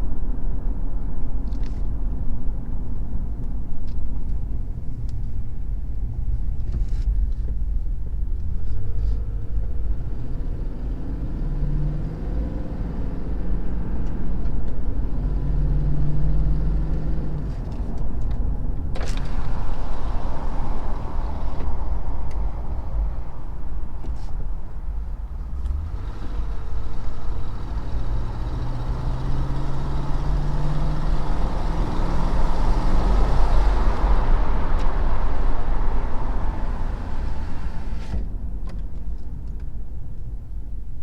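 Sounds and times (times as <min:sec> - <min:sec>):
engine running with a tick: 0:01.4 - 0:02.0, 0:03.3 - 0:05.4, 0:06.3 - 0:09.4, 0:13.9 - 0:14.9, 0:16.9 - 0:20.2, 0:36.7 - 0:40.4.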